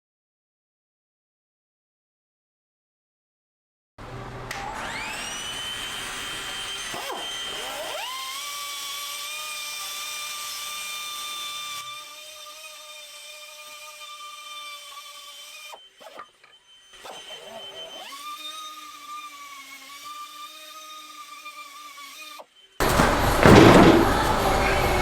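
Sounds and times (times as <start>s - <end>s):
small motor whining: 4.0s - 25.0s
loud dense sound: 22.8s - 25.0s.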